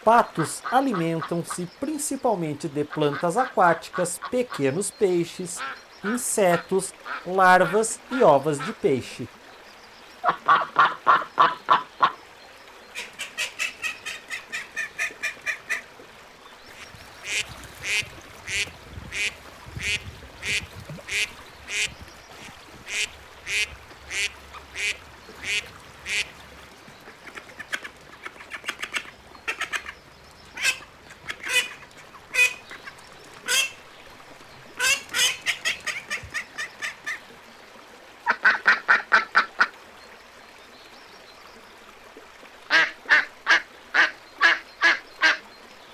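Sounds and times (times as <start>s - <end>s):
ducks quacking: 0.1s - 2.0s, 2.6s - 9.2s, 10.2s - 12.2s, 12.9s - 15.9s, 16.7s - 26.4s, 27.1s - 33.8s, 34.8s - 37.2s, 42.7s - 45.4s.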